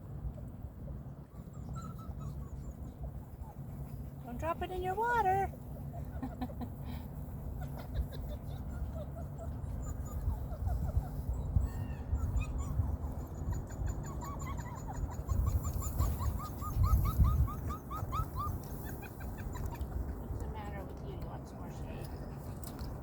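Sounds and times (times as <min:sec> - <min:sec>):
low outdoor rumble: 0:00.0 - 0:23.0
puppy whining squeaks: 0:01.3 - 0:03.7, 0:07.6 - 0:20.2.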